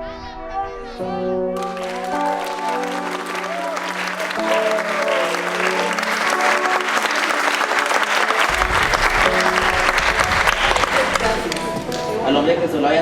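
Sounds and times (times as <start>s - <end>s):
music with held notes: 0.1s - 12.7s
audience applauding: 1.6s - 12.2s.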